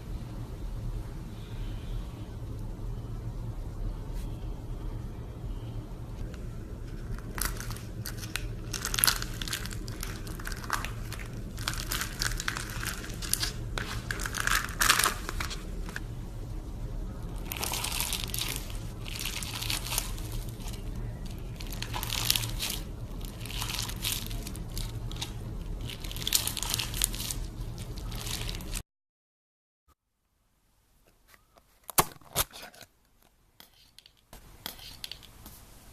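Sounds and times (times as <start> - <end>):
steady low hum: 0.0 - 28.8
crunchy squishing slime: 6.8 - 16.1, 16.9 - 28.8.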